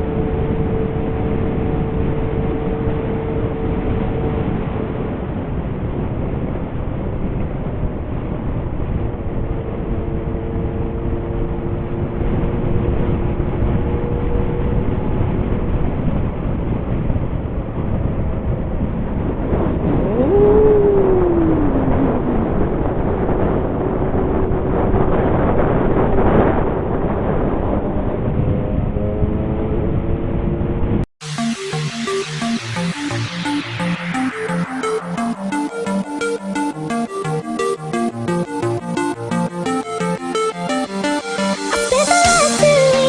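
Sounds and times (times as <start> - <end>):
wind noise on microphone: 0.0 - 31.1.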